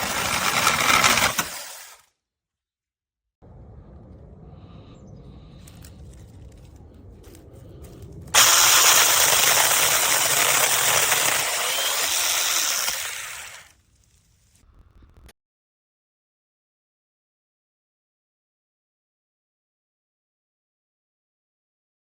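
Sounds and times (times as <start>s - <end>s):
mini chainsaw running: 0.0s - 2.1s, 8.4s - 13.7s.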